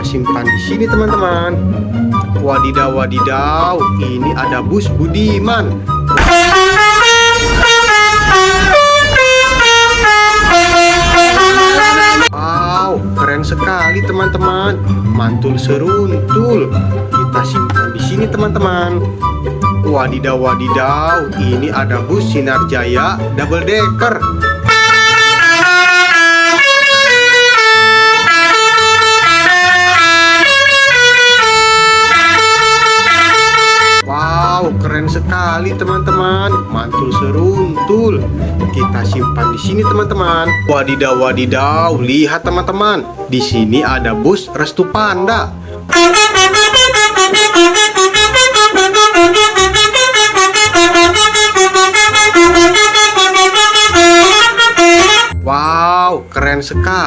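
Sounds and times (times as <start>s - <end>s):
multi-tone bus horn melody: 6.2s - 12.4s, 24.6s - 34.1s, 45.9s - 55.4s.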